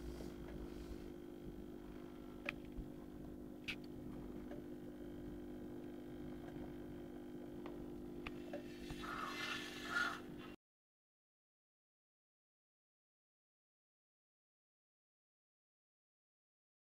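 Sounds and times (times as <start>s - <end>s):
aquarium pump humming: 0.0s - 10.6s.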